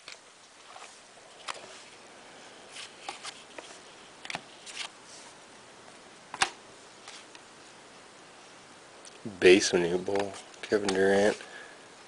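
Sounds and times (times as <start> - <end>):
trading cards rustling and clicking: 0.0 - 2.0, 2.7 - 5.0, 10.0 - 11.5.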